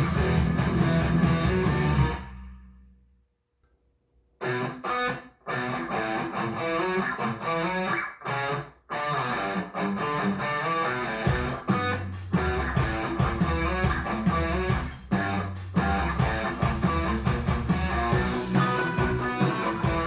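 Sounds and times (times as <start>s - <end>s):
guitar music: 0.0s - 2.5s, 4.4s - 20.0s
plucked guitar music: 15.8s - 20.0s.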